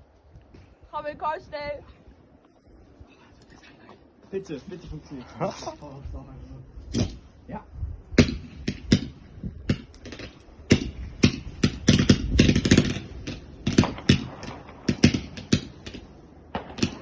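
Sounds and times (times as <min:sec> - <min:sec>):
fireworks and firecrackers banging: 0:08.2 - 0:17.0.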